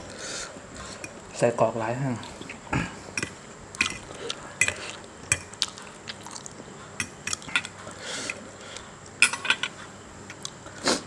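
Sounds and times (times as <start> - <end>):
utensils clinking against dish: 0.8 - 1.4, 2.4 - 5.7, 7.0 - 8.5, 9.2 - 10.5.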